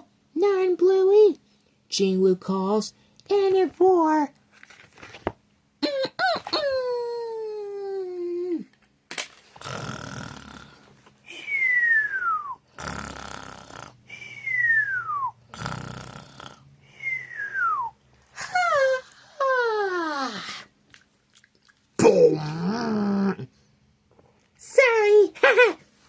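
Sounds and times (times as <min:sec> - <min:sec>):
man imitating cartoon snoring: 0:09.6 - 0:10.8, 0:12.7 - 0:14.6, 0:15.5 - 0:16.7.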